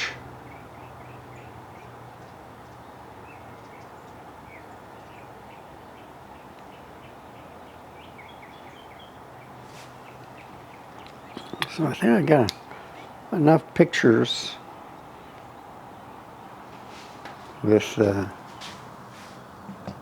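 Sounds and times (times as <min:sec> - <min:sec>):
background hiss: 0:00.0 - 0:00.4, 0:09.2 - 0:20.0
small birds chirping: 0:00.0 - 0:20.0.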